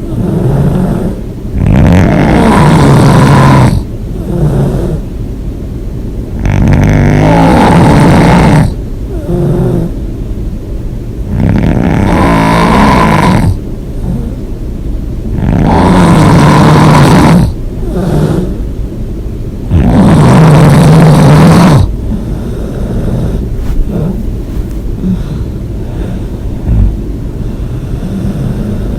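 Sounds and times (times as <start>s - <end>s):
person snoring loudly: 0.1s - 5.0s, 6.4s - 9.9s, 11.3s - 14.4s, 15.3s - 18.6s, 19.7s - 27.0s
quiet breathing: 21.8s - 28.9s.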